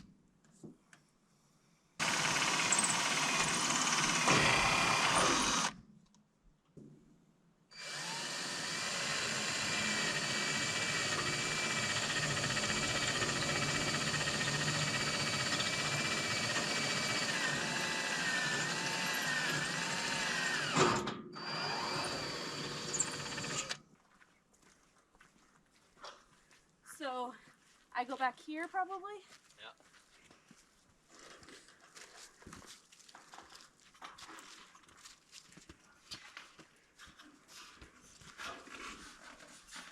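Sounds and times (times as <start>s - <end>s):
cordless drill drilling into metal: 2.0s - 5.8s, 7.8s - 23.8s.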